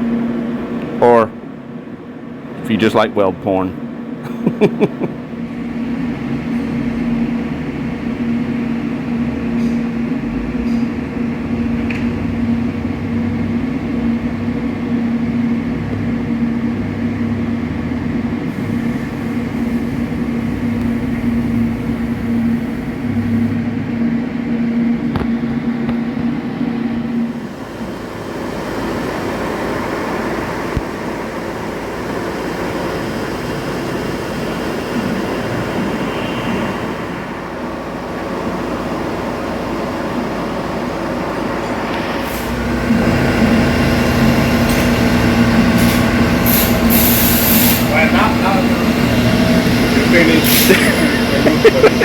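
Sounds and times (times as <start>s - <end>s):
constant low hum: 0.0s - 36.0s, 36.8s - 52.0s
welding arc hiss: 42.2s - 52.0s.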